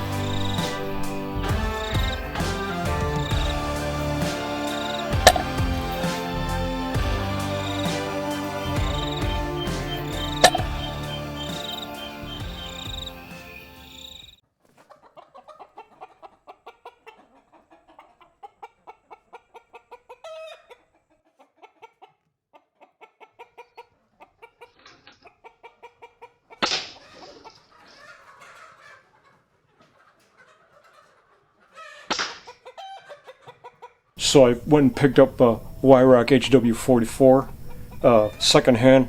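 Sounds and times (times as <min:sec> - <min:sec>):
animal calling in pulsed notes: 0:00.0 - 0:14.3.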